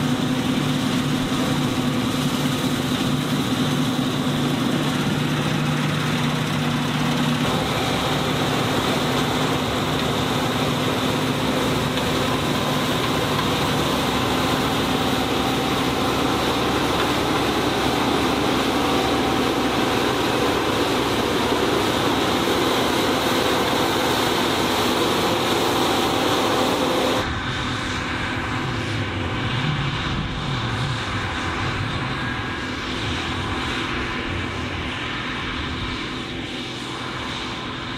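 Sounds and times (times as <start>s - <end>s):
combine harvester droning: 0.0s - 27.4s.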